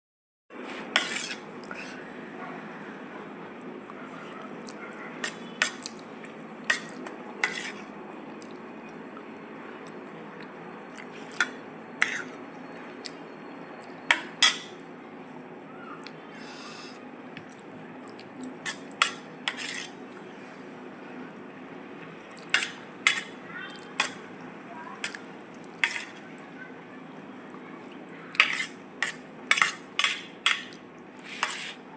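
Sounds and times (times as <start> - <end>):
utensils clinking against dishes: 14.1 - 14.8, 18.6 - 20.0, 22.4 - 23.4, 25.8 - 26.2, 28.4 - 31.8.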